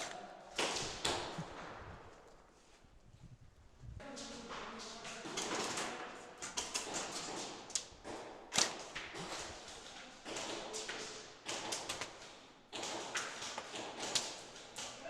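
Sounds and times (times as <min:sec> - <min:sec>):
sharp crack: 0:07.7 - 0:09.0.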